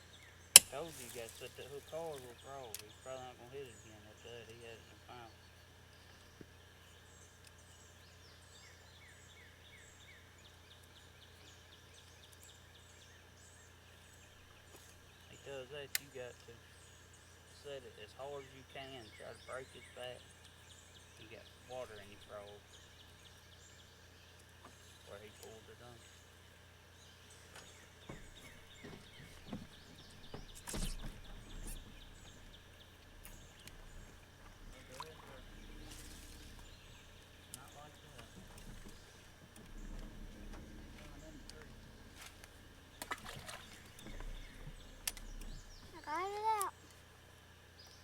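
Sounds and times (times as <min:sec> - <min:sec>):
birds whistling and chirping: 0:00.0 - 0:46.8
low steady hum: 0:00.0 - 0:48.0
knocks and clunks: 0:27.6 - 0:46.1.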